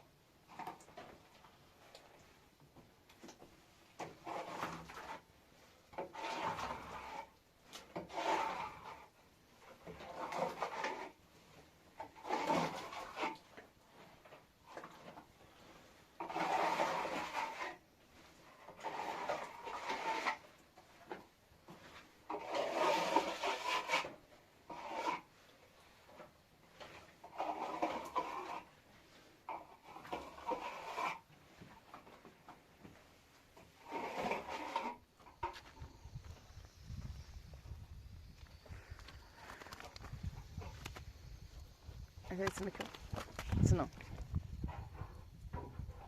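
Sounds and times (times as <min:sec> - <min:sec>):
rasping rubbing strokes: 0:04.1 - 0:11.2, 0:12.0 - 0:32.2, 0:33.2 - 0:36.6.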